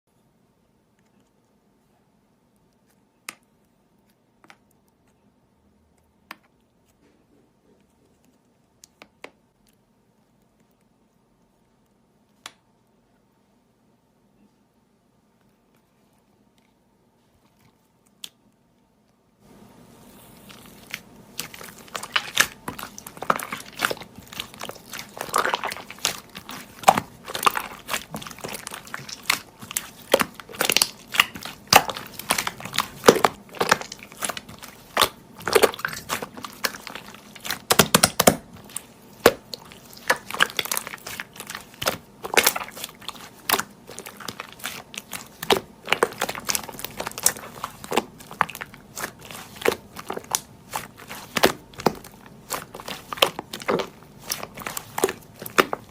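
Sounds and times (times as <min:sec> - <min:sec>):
slime squeezed crackling and popping: 0:20.4 - 0:55.9.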